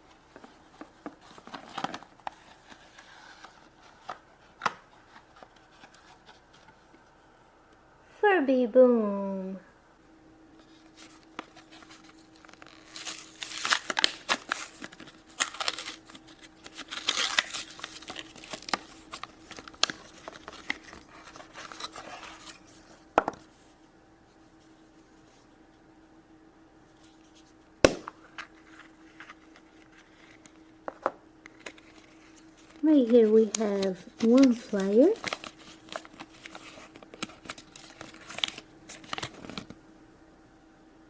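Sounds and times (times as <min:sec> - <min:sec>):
plastic packaging crinkling and tearing: 0:00.3 - 0:06.7, 0:10.6 - 0:22.8, 0:31.5 - 0:39.8.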